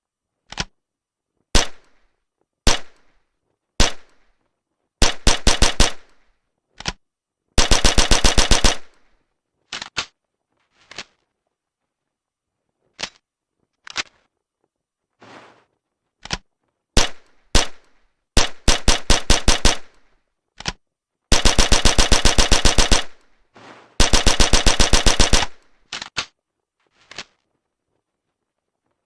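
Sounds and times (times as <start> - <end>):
clicks: 0.4 - 0.8.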